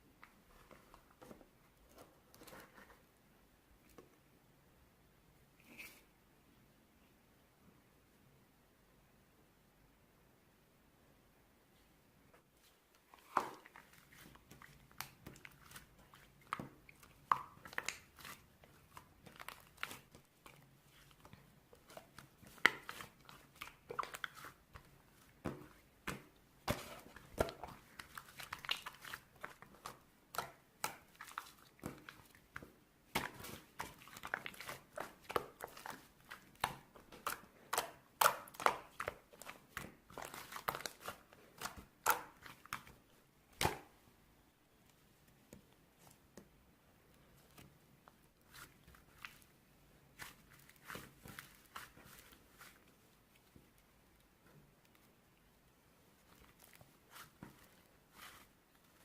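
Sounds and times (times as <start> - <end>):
crinkling: 12.6 - 43.8, 56.1 - 59.0.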